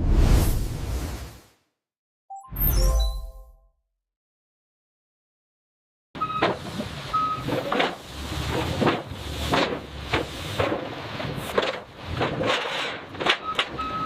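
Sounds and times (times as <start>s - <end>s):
short electronic beeps: 2.3s - 3.7s.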